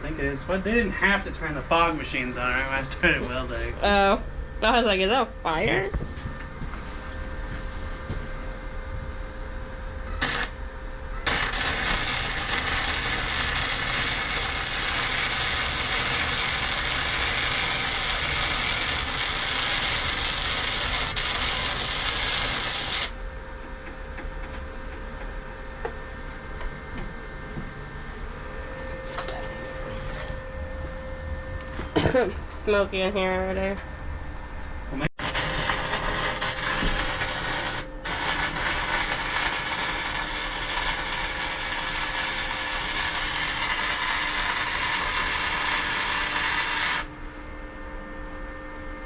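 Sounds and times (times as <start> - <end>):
arc welder crackling: 10.1 - 23.2, 35.1 - 47.2.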